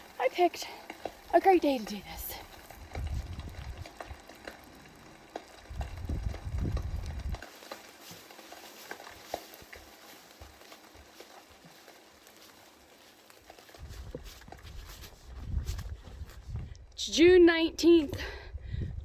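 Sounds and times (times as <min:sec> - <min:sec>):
footsteps on trail: 0:00.0 - 0:17.0
rain and snow patter: 0:00.0 - 0:18.4
wind rumble on microphone: 0:02.3 - 0:04.3, 0:05.6 - 0:07.4, 0:13.8 - 0:17.4, 0:18.0 - 0:19.0.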